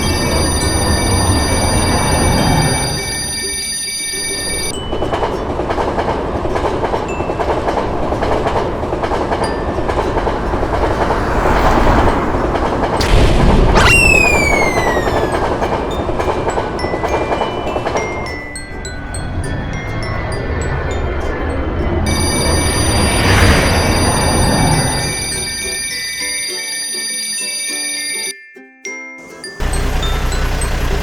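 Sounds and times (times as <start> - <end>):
steady ringing tone: 0.0 - 4.7, 18.1 - 28.3
train wheels clicking over rail joints: 4.8 - 11.5.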